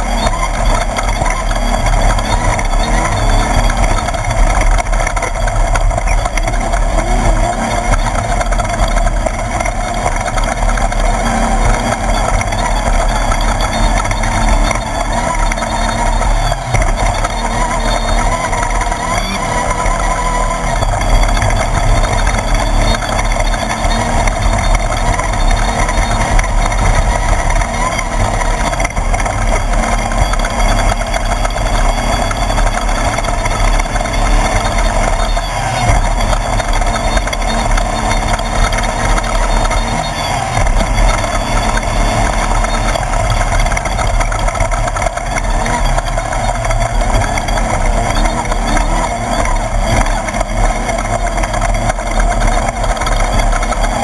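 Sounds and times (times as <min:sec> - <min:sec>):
buggy engine running at speed: 0:00.0 - 0:54.0
road and wind noise: 0:00.0 - 0:54.0.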